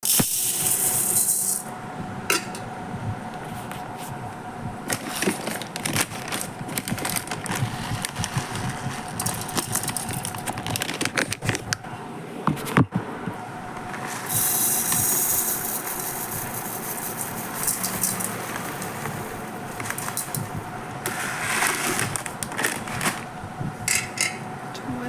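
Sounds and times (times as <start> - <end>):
loud hiss: 0.0 - 1.7
irregular clicking and rattling: 4.9 - 11.8.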